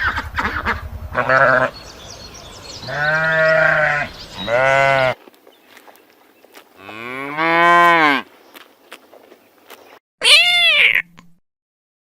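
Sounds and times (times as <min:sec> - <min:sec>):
animal call rising in pitch: 0:00.0 - 0:05.2
short bleats: 0:01.2 - 0:01.7, 0:02.8 - 0:05.2, 0:06.8 - 0:08.3.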